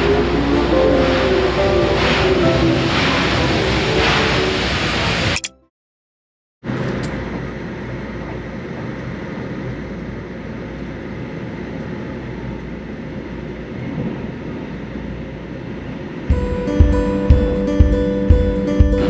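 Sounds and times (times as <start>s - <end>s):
music: 0.0s - 4.0s, 16.3s - 19.0s
train rumbling: 0.0s - 5.4s, 7.1s - 19.0s.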